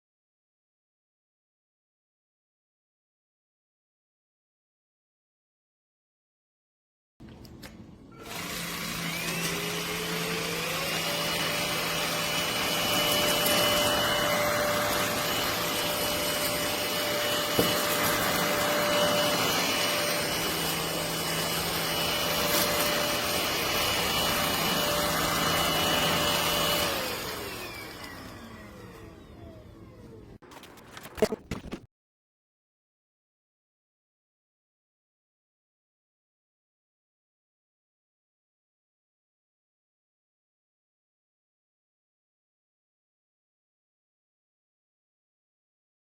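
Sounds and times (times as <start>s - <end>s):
vacuum motor whine: 8.0s - 30.4s.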